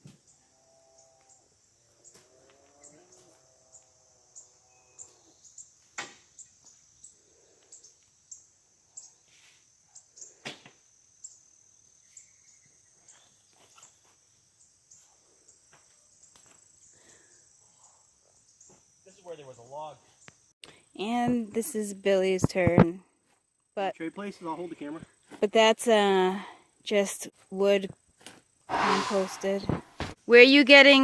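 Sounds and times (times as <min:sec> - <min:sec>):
insect chorus: 0:00.0 - 0:22.4, 0:27.9 - 0:30.1
shovel digging into manure: 0:28.7 - 0:30.1.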